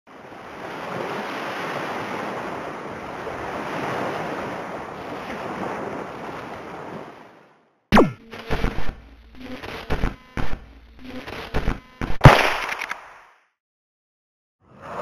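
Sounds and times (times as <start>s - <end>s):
sea waves washing: 0.1s - 7.6s.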